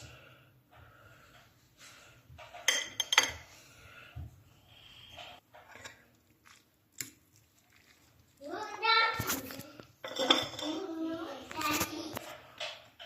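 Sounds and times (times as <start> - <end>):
dishes and cutlery clinking: 2.3 - 3.6, 9.2 - 13.0.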